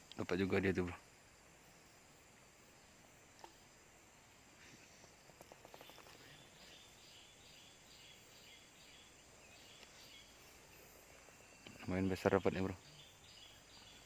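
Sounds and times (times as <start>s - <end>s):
faint outdoor ambience: 0.0s - 14.0s
bird chirping: 4.4s - 14.0s.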